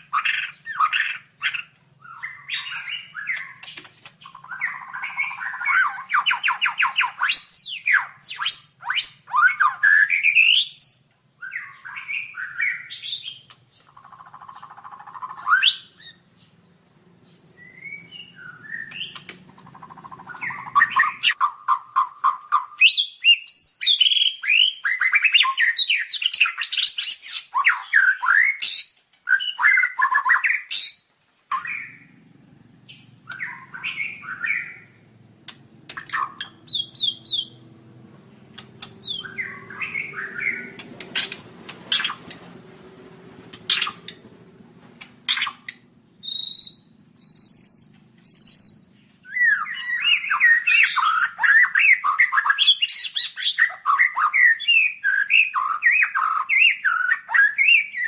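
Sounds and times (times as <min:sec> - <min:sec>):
bird singing trills and whistles: 0:00.0 - 0:16.6, 0:17.2 - 0:32.1, 0:32.9 - 0:35.0, 0:35.9 - 0:37.6, 0:38.5 - 0:42.3, 0:43.6 - 0:44.2, 0:45.2 - 0:58.0.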